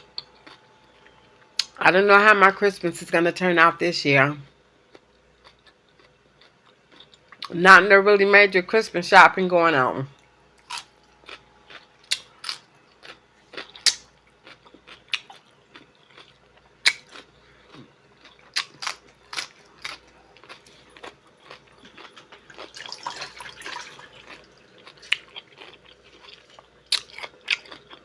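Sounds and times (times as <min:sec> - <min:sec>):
close chewing with mouth clicks: 0:00.1 - 0:01.8, 0:10.6 - 0:28.0
lip smacks: 0:13.7 - 0:14.2.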